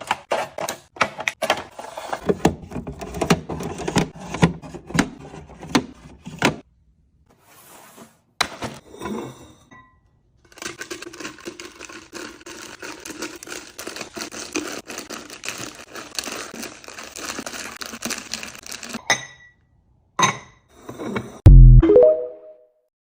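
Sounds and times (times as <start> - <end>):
plastic packaging crinkling: 10.6 - 19.0.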